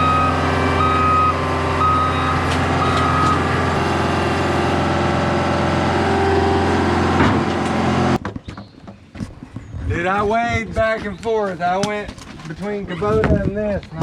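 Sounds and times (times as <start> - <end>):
backup alarm beeping: 0.0 - 4.4
heavy equipment engine running: 0.0 - 8.2.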